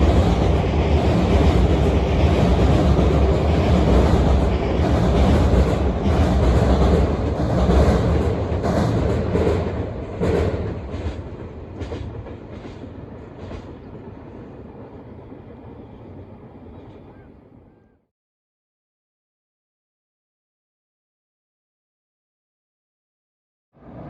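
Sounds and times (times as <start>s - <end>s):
wheels clicking over rail joints: 0.0s - 14.9s
train rumbling past: 0.0s - 17.9s, 23.8s - 24.0s.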